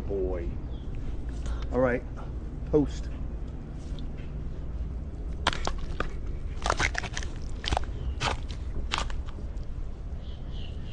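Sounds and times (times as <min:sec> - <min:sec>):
alligator jaws crunching food: 0:05.2 - 0:09.7.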